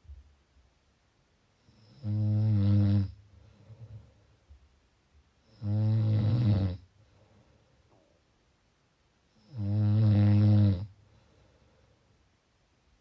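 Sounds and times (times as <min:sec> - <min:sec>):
quiet breathing: 0:01.5 - 0:08.4, 0:09.2 - 0:12.6
person snoring: 0:01.6 - 0:03.2, 0:05.4 - 0:06.8, 0:09.3 - 0:11.0.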